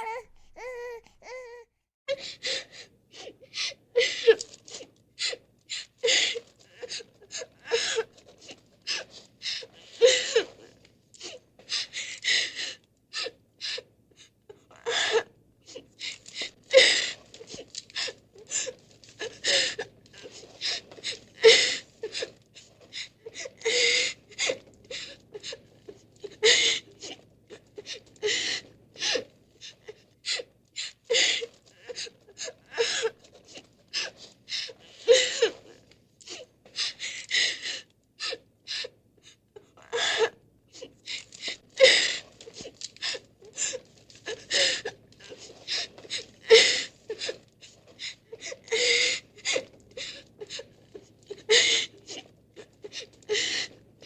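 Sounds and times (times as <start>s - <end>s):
person crying in gasping sobs: 0.0s - 4.5s.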